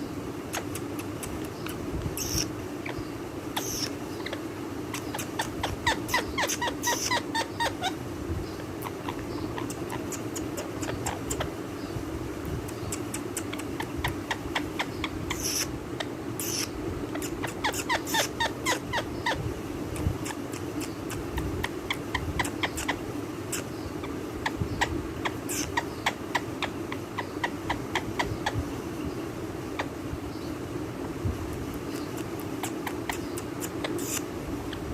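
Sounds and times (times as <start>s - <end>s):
steady low hum: 0.0s - 34.9s
parrot clicks and chirps: 0.5s - 3.0s, 3.6s - 7.2s, 12.6s - 15.7s, 31.7s - 34.2s.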